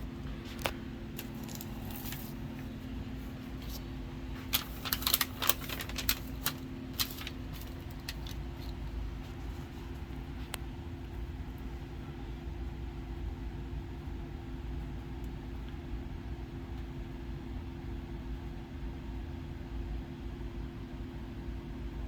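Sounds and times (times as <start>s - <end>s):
steady low hum: 0.0s - 22.0s
paper sheets crinkling: 0.2s - 10.5s.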